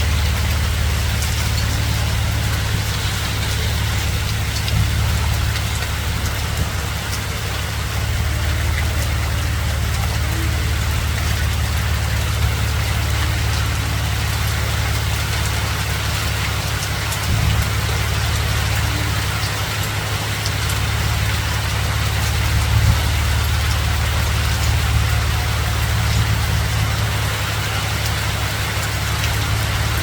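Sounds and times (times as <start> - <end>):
low rumble: 0.0 - 14.4
hailstones ticking: 0.0 - 30.0
rain hissing: 0.0 - 30.0.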